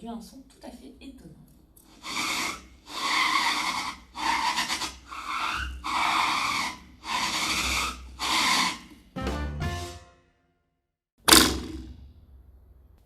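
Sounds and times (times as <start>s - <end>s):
ridged object rasping on wood: 1.9s - 9.1s.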